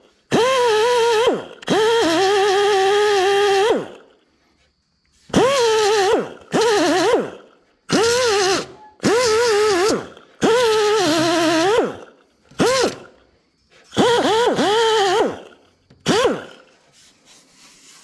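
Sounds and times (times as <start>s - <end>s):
air grinder grinding metal: 5.2s - 13.2s, 13.8s - 16.8s.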